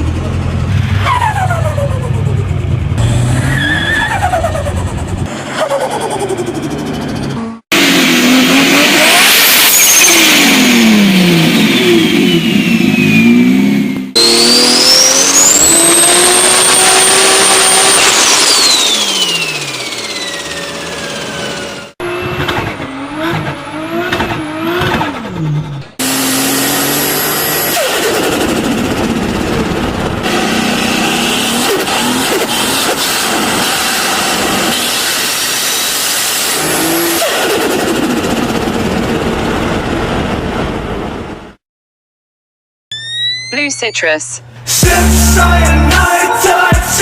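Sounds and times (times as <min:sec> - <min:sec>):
car engine revving: 0:00.0 - 0:40.3, 0:44.7 - 0:47.0
turbo whine: 0:09.5 - 0:23.7, 0:42.9 - 0:46.2.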